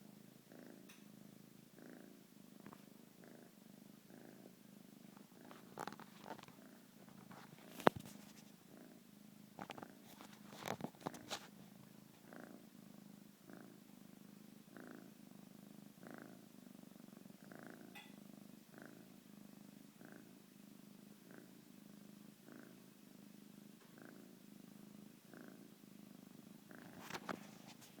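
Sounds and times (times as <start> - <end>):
pet snoring softly: 0.4 - 9.0, 12.2 - 13.9, 14.7 - 20.4, 21.2 - 22.9, 23.8 - 24.4, 25.1 - 28.0.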